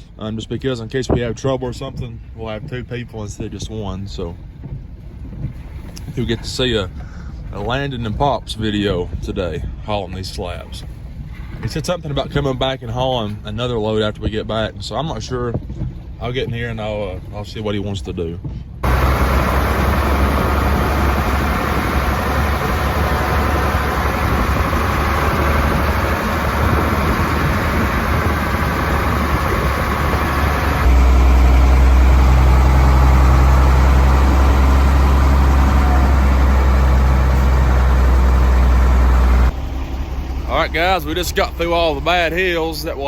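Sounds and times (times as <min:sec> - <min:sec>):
truck engine rumble: 0:18.2 - 0:43.0
road noise: 0:18.6 - 0:43.0.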